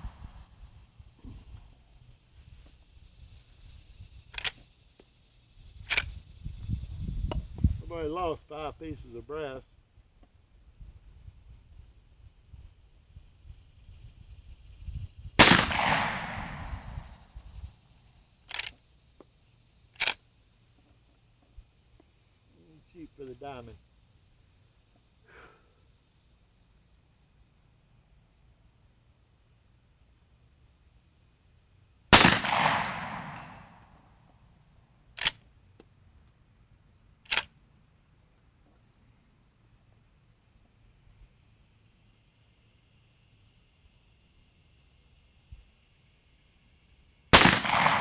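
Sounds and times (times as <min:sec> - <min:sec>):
rifle shot: 0:15.4 - 0:17.3, 0:32.1 - 0:34.0, 0:47.3 - 0:48.0.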